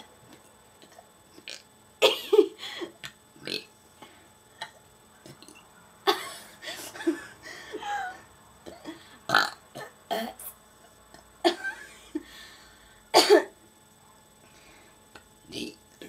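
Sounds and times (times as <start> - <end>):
person burping syllables: 1.4 - 1.7, 3.0 - 3.7, 4.6 - 4.8, 8.7 - 10.5, 15.5 - 15.8.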